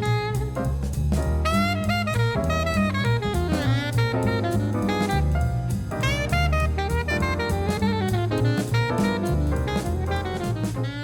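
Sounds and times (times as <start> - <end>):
drum kit: 0.0 - 11.0
saxophone: 0.0 - 11.0.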